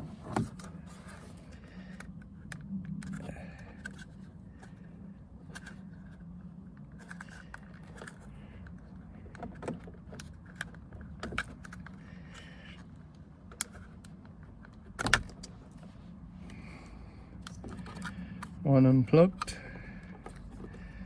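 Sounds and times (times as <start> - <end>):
steady low hum: 0.0 - 21.0.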